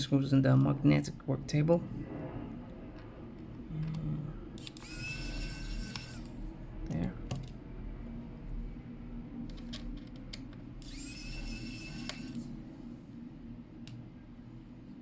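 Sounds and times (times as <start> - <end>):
small screws and tools clicking: 4.6 - 6.3, 9.5 - 12.4
electric screwdriver whirring: 4.6 - 6.4, 10.8 - 12.5.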